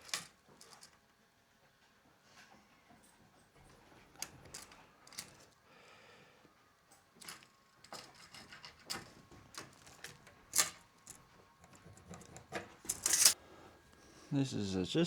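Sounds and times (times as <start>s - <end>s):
hand tools clicking and tapping: 4.1s - 5.6s, 6.9s - 13.4s.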